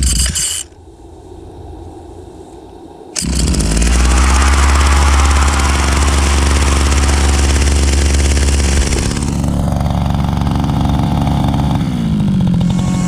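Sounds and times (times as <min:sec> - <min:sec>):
brush cutter engine running: 0:03.2 - 0:13.0.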